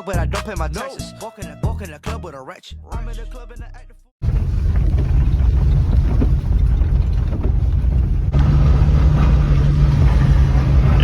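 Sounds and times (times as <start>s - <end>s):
car engine running: 4.2s - 11.0s.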